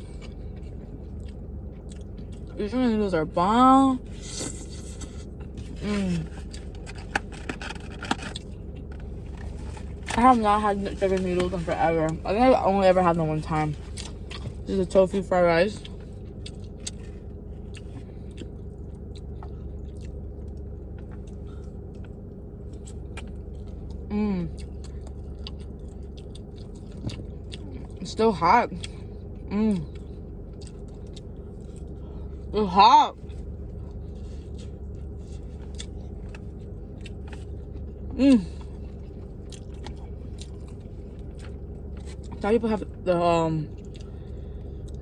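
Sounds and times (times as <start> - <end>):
person chewing food: 0.0 - 2.6, 4.1 - 10.1, 13.9 - 14.7, 15.8 - 28.0, 28.8 - 32.5, 33.2 - 42.4, 43.7 - 45.0
steady low hum: 0.0 - 45.0.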